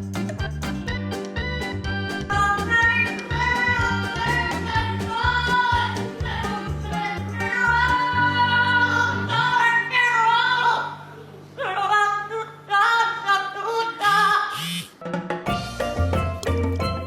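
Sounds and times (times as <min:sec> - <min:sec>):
steady bass notes: 0:00.0 - 0:09.6, 0:15.5 - 0:17.0.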